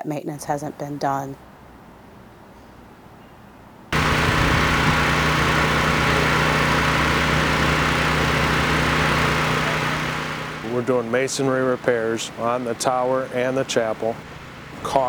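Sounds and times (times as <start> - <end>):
large engine running with hiss: 3.9 - 15.0.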